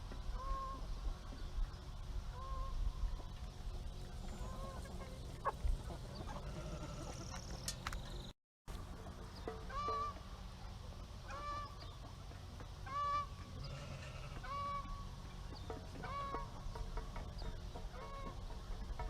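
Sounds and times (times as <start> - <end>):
low steady background hum: 0.0 - 19.0
fowl calling: 0.3 - 0.9, 4.3 - 7.7, 9.7 - 10.3, 11.2 - 11.8, 12.8 - 15.1, 16.0 - 16.7.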